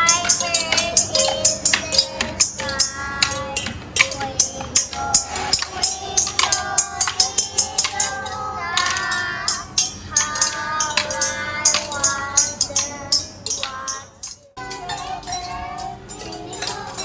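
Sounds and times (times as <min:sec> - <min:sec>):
jingling hand percussion: 0:00.0 - 0:17.0
people singing: 0:00.0 - 0:17.0.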